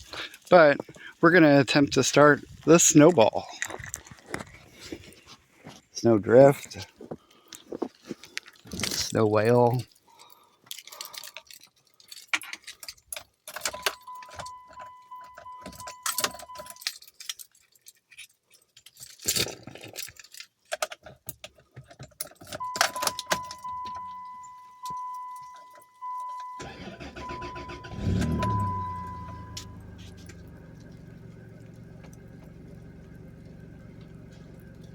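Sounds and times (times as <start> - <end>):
keys jangling: 9.8 - 26.5
dashboard warning chime: 13.6 - 16.9, 22.6 - 30.8
car engine cranking and running: 26.0 - 34.9.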